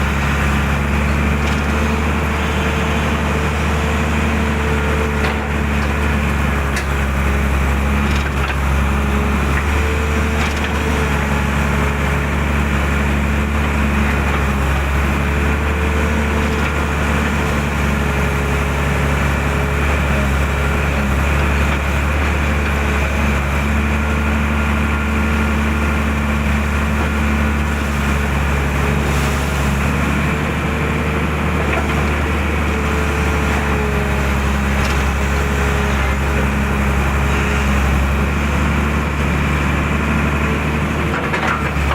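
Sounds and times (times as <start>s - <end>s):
excavator diesel engine: 0.0s - 41.9s.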